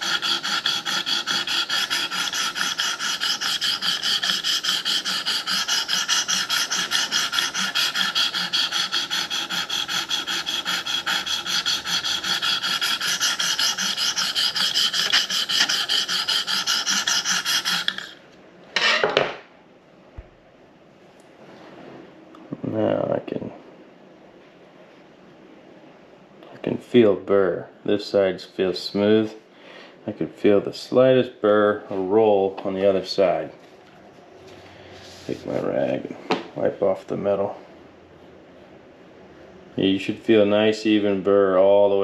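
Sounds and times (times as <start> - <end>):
sharpening stone rasping on blade: 0.0 - 18.2.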